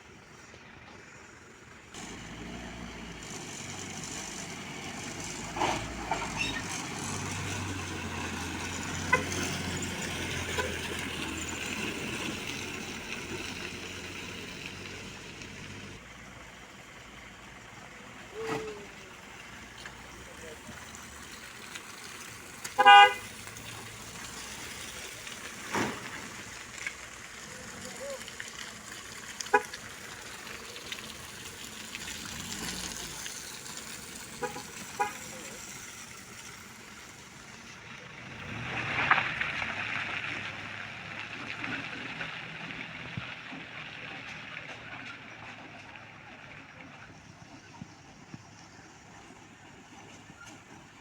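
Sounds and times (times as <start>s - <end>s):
hiss of water and mud: 0.0s - 44.0s
truck driving on muddy road: 0.0s - 51.0s
vehicle horn honk: 9.0s - 9.5s, 22.8s - 23.2s, 34.4s - 35.3s.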